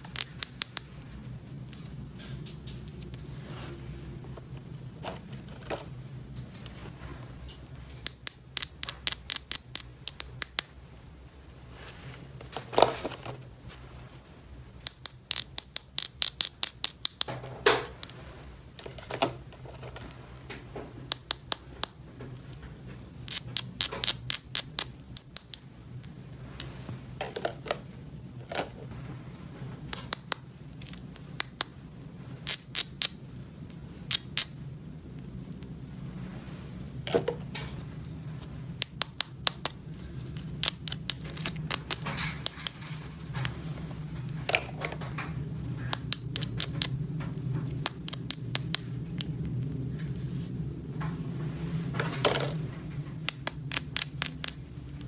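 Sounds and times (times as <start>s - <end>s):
steady low hum: 0.0s - 55.0s
plastic toy pieces clicking: 14.8s - 17.3s.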